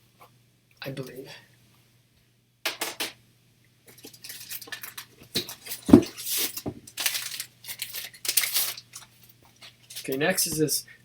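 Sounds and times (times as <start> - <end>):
heavy thump: 5.9 - 6.8.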